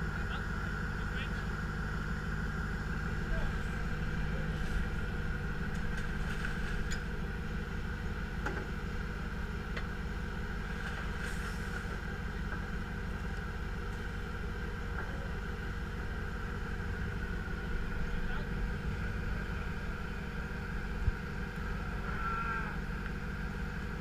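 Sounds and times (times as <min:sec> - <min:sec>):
engine running at low revs: 0:00.0 - 0:24.0.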